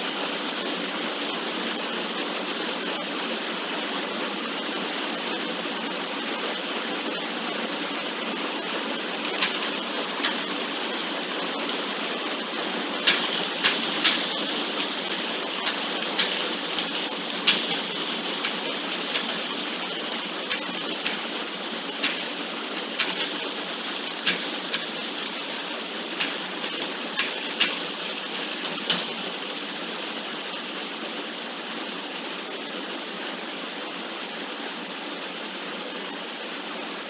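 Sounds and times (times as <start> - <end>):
gearbox grinding hiss: 8.9 - 11.8, 12.7 - 29.4
sharp clicks: 9.3 - 10.4, 13.0 - 19.5, 20.1 - 21.2, 22.0 - 22.3, 22.9 - 23.4, 24.0 - 25.3, 26.2 - 27.9.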